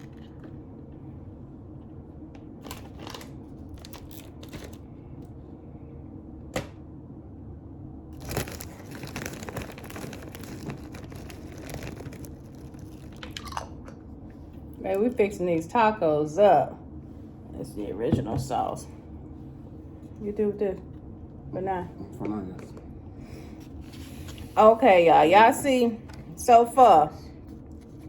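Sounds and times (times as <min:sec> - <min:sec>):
wrapper crinkling and rustling: 0:02.6 - 0:04.8, 0:08.2 - 0:13.8.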